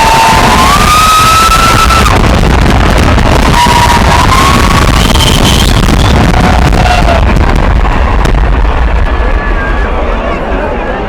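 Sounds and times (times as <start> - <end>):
crowd cheering: 0.0 - 11.0
long sliding whistles: 3.6 - 6.2.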